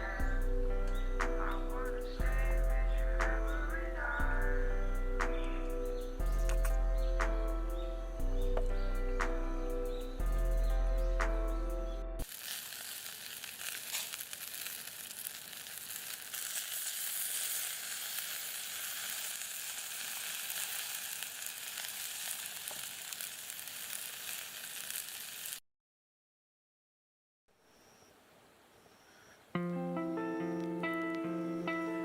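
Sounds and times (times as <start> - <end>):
food sizzling in pan: 12.2 - 25.6.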